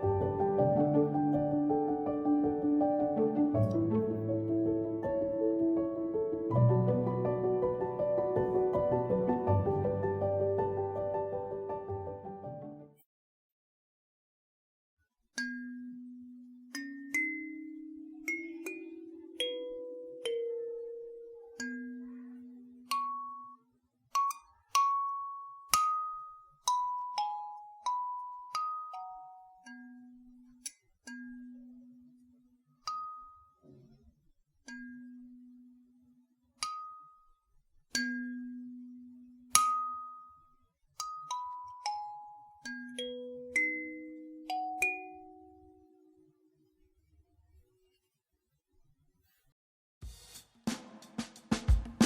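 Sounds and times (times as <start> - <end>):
kalimba melody: 15.5 - 23.6, 24.2 - 30.2, 41.0 - 46.0.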